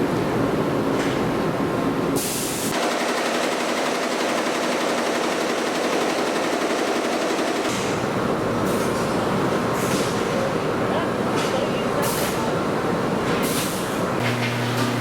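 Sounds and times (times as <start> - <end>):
machinery mechanical chatter: 13.8 - 15.0.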